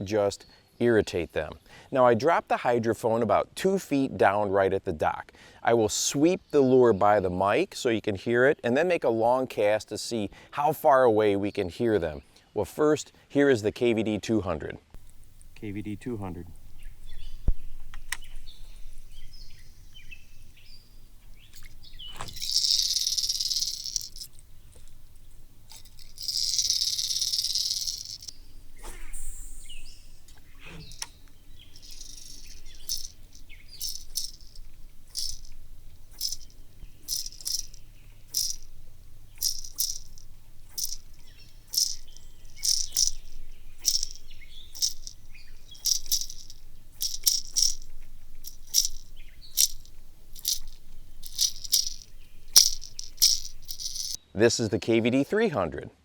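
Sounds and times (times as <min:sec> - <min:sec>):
lure rattles clacking: 0:15.0 - 0:54.2.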